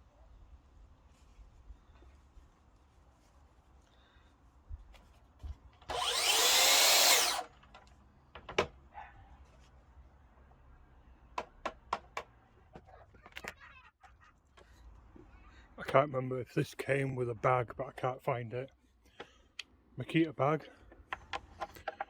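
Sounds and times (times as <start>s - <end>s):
saw motor spinning up: 5.9s - 7.5s
clicks and knocks of handling: 20.9s - 22.0s.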